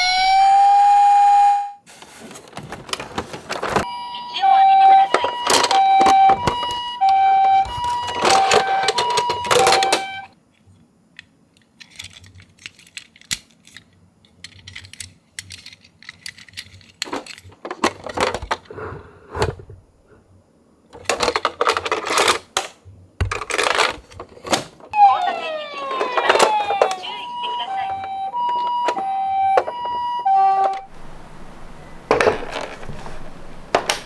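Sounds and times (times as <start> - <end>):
two-tone ambulance siren: 0.0 - 1.8, 3.8 - 10.3, 24.9 - 34.0
toy cars clicking and clattering: 11.1 - 18.7, 20.9 - 30.0.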